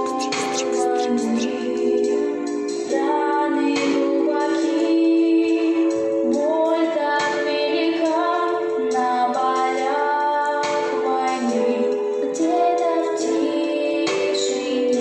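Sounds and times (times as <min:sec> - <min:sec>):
backing music: 0:00.0 - 0:01.9
high voices singing: 0:00.0 - 0:02.2.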